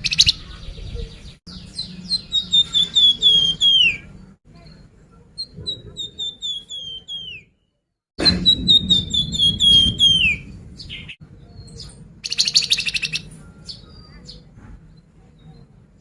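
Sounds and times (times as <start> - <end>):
songbird whistling: 1.5 - 4.1, 5.4 - 7.6, 8.2 - 14.5.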